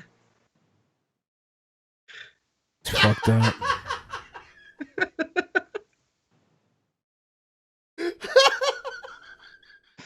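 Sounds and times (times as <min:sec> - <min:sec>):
people laughing: 0:02.9 - 0:05.8, 0:08.0 - 0:10.0.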